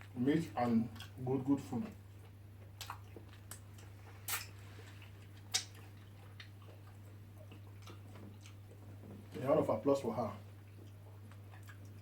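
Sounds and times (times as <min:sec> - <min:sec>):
wet mouth smacks while eating: 0:02.6 - 0:08.6, 0:10.7 - 0:12.0.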